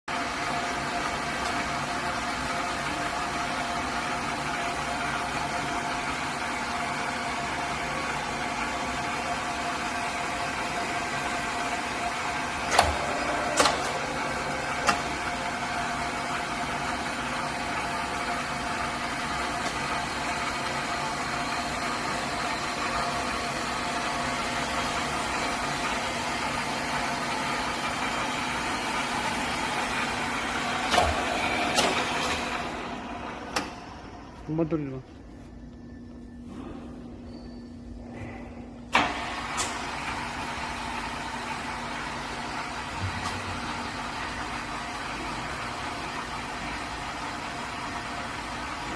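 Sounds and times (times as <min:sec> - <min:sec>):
milling machine motor whine: 0:00.1 - 0:34.7.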